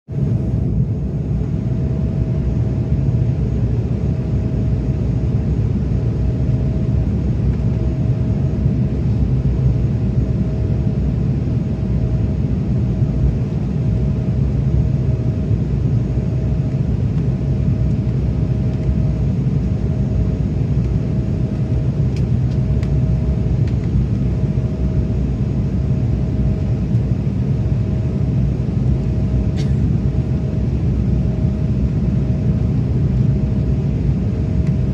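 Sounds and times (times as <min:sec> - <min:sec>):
airliner engines rumbling: 0:00.1 - 0:34.9.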